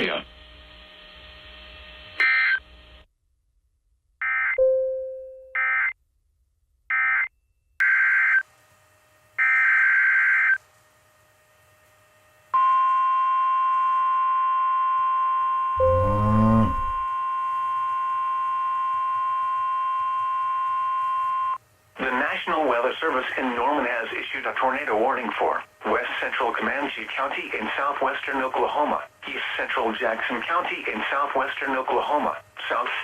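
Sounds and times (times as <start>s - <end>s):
steady warning alarm tone: 9.4s - 10.6s, 12.6s - 21.6s
buzzy digital data chirps: 15.8s - 17.1s.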